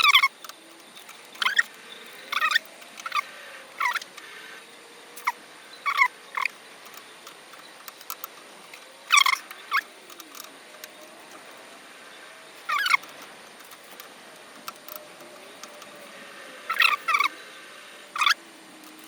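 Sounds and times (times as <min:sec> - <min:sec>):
small animal squeaky chirps: 0:00.0 - 0:00.5, 0:01.4 - 0:04.1, 0:05.2 - 0:06.6, 0:09.1 - 0:10.5, 0:12.6 - 0:13.1, 0:16.7 - 0:17.4, 0:18.2 - 0:18.4
faint background hum: 0:00.0 - 0:19.0.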